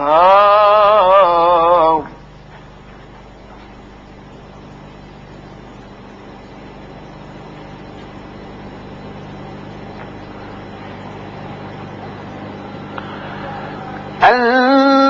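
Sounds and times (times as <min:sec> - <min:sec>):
low mains hum: 0:00.0 - 0:15.0
old recording hiss: 0:00.0 - 0:15.0
faint click: 0:12.9 - 0:13.1.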